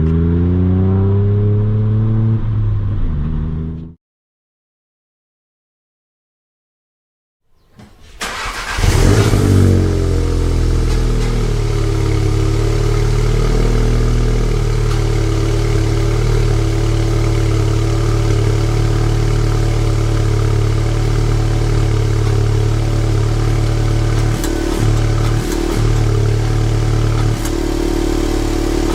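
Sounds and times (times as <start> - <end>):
car engine starting and idling: 7.7 - 28.9.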